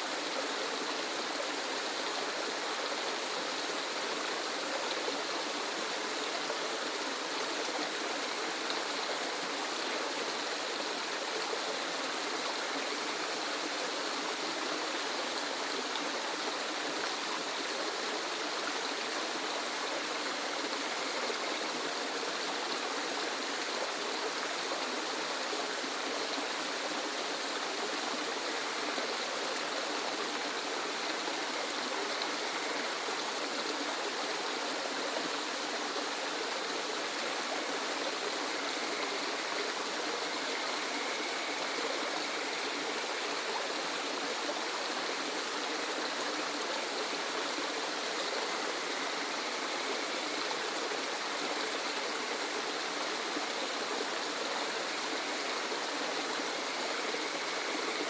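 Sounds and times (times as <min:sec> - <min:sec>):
waterfall rushing: 0:35.4 - 0:58.0.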